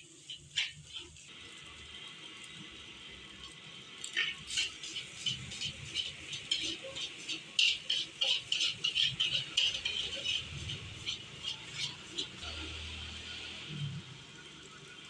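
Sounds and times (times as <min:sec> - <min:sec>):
metal spatula scraping a wok: 0:00.0 - 0:01.3, 0:04.1 - 0:13.6.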